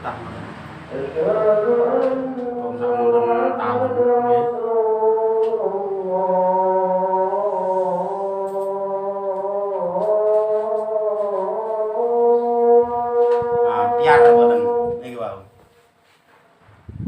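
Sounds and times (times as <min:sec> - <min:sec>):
person holding a long sung note: 0:00.9 - 0:16.0.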